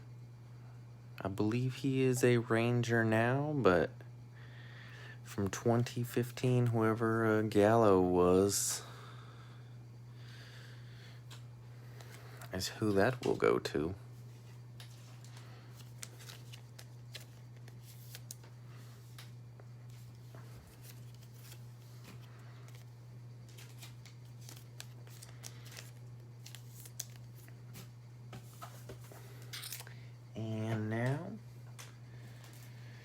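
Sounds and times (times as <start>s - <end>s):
steady low hum: 0.0s - 33.0s
cards and packaging rustling: 14.3s - 30.0s.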